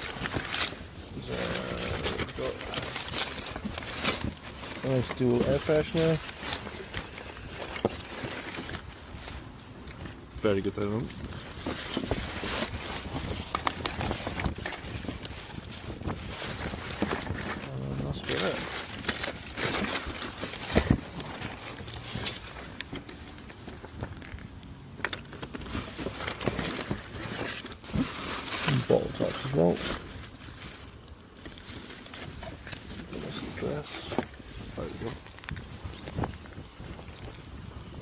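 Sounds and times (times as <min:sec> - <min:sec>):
wind rumble on microphone: 0:08.7 - 0:19.6, 0:32.3 - 0:38.0.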